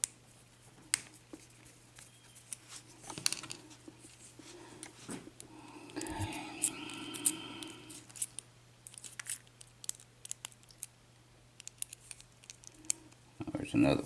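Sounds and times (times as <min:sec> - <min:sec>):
steady hum: 0:00.0 - 0:08.8.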